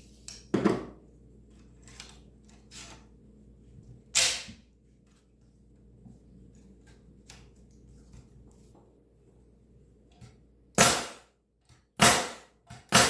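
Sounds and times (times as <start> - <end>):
pneumatic stapler firing: 4.2 - 4.5, 12.0 - 13.0.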